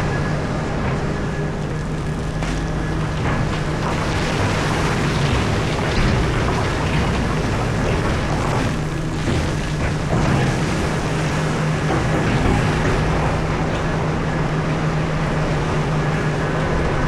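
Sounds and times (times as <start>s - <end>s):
excavator engine under load: 0.0s - 17.0s
rock crunching and scraping bucket: 1.6s - 14.0s.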